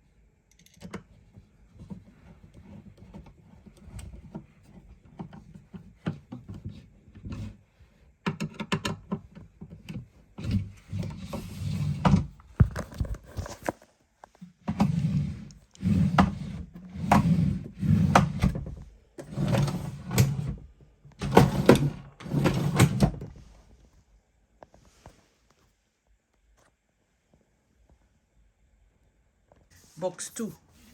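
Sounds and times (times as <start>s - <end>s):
furniture parts scraping and sliding: 10.4s - 13.8s, 14.6s - 20.6s, 21.2s - 23.4s.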